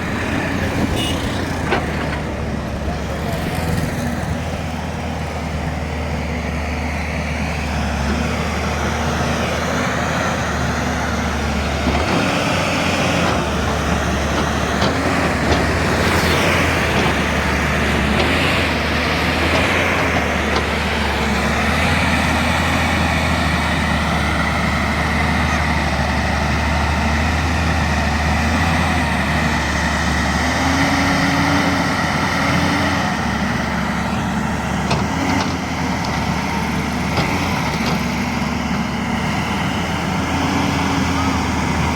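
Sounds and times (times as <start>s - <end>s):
excavator diesel engine running: 0.0s - 41.9s.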